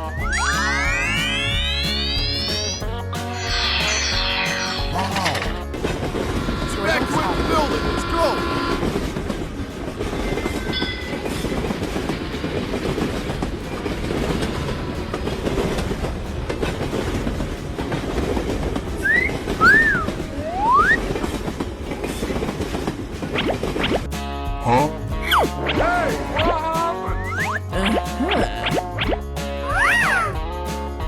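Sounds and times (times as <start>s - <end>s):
sliding whistle-like tones: 0.0s - 5.8s, 19.0s - 21.3s, 27.0s - 30.3s
train rumbling on rails: 3.7s - 24.3s.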